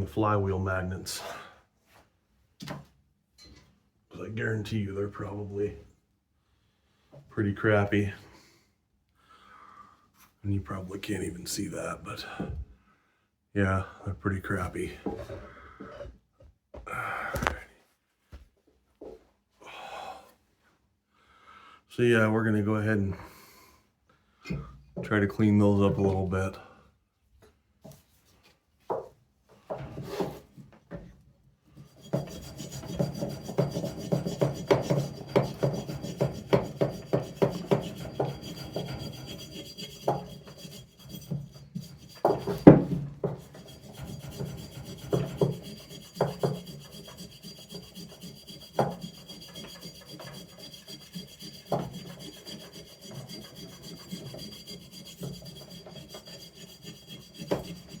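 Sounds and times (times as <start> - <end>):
hand scrubbing on metal: 31.8 - 58.0.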